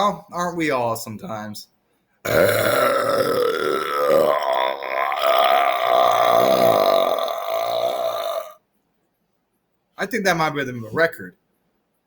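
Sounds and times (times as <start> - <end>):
man belching: 2.3 - 8.6.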